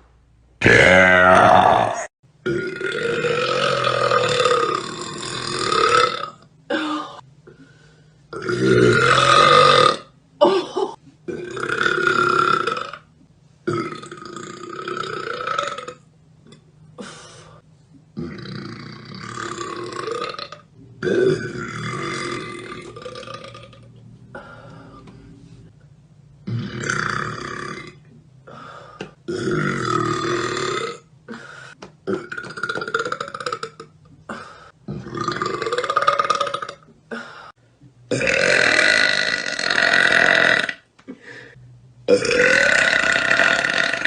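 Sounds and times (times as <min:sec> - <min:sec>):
women burping: 0:00.6 - 0:04.8.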